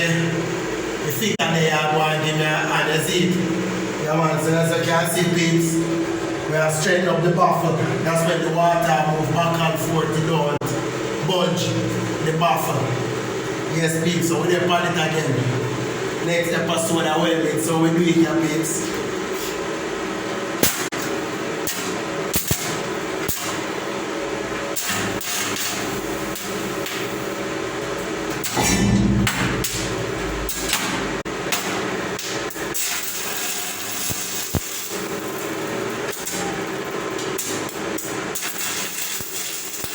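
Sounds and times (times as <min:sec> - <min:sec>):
steady noisy background: 0:00.0 - 0:39.9.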